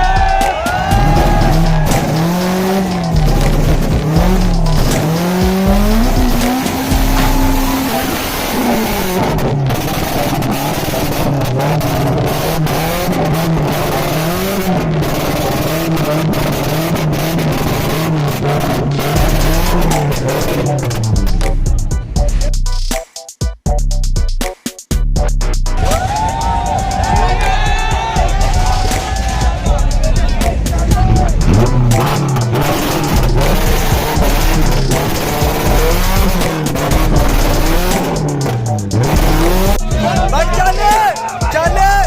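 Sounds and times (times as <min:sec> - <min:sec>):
tyres squealing and skidding: 0:00.0 - 0:21.1
car engine revving hard: 0:00.0 - 0:21.5, 0:30.4 - 0:40.9.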